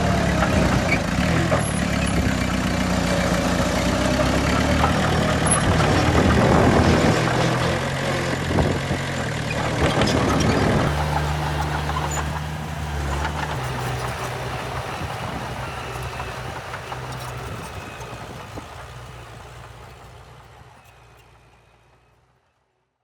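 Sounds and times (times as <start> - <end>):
heavy diesel engine humming: 0.0 - 22.4.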